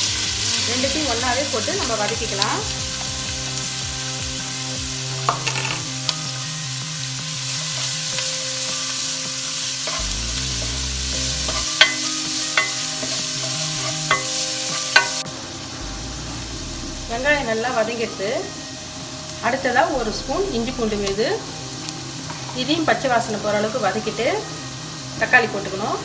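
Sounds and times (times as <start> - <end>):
onion sizzling in hot oil: 0.0 - 15.8.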